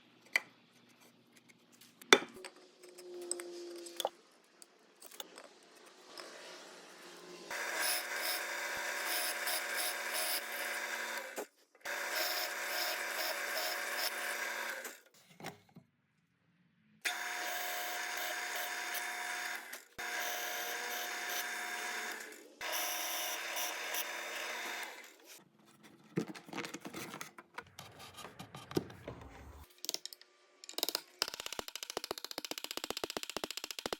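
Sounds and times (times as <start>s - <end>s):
power drill boring wood: 7.5s - 15.1s, 17.1s - 25.4s.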